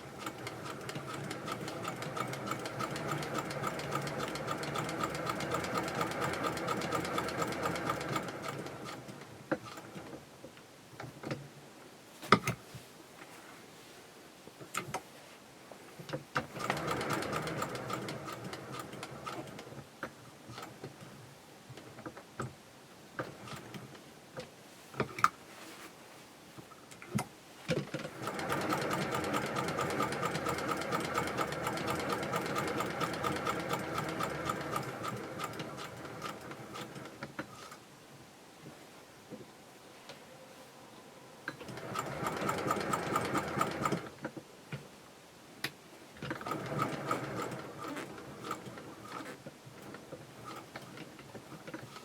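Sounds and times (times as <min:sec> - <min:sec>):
sewing machine stitching: 0:00.0 - 0:10.1, 0:16.4 - 0:19.7, 0:28.0 - 0:37.8, 0:41.6 - 0:44.1, 0:46.2 - 0:52.0.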